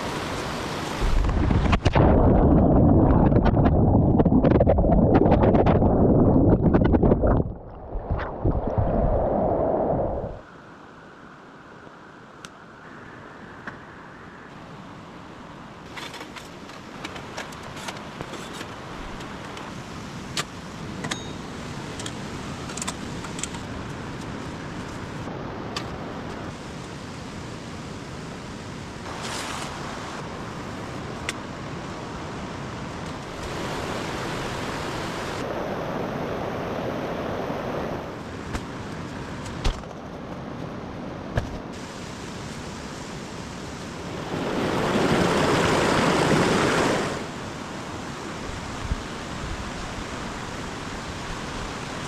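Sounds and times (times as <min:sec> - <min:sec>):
stream water rushing: 0:00.0 - 0:11.6, 0:29.0 - 0:38.9, 0:41.0 - 0:52.0.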